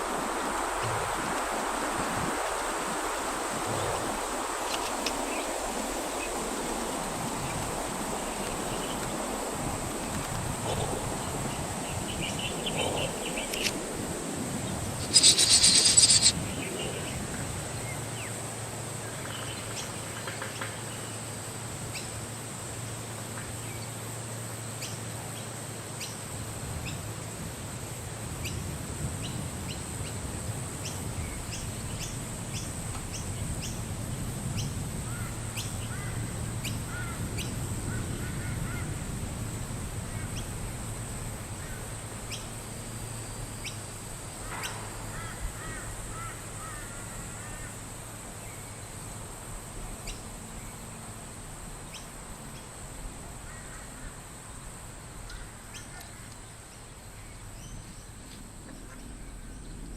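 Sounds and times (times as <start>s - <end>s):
high insect drone: 0.0s - 59.9s
faint bird chirps: 15.0s - 16.4s
rapid chattering bird call: 15.0s - 16.4s.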